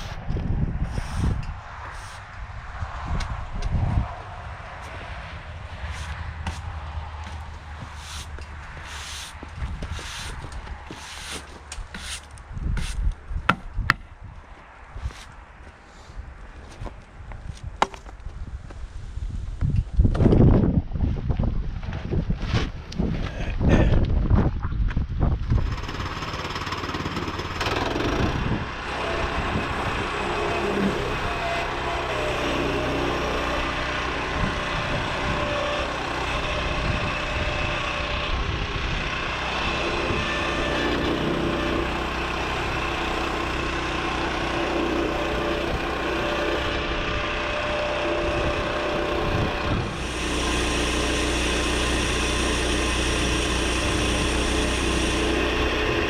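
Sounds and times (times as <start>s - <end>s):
saw blade cutting log: 0.9s - 2.3s, 5.8s - 13.7s, 25.7s - 56.0s
sawmill engine running: 5.6s - 13.0s, 25.6s - 56.0s.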